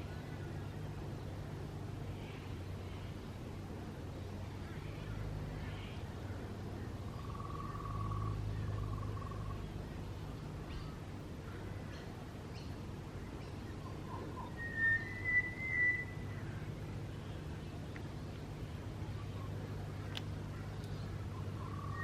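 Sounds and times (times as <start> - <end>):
steady low hum: 0.0 - 22.0
faint high bird chirps: 7.1 - 9.8, 11.8 - 17.4, 20.6 - 22.0
bird whistling: 14.2 - 16.2.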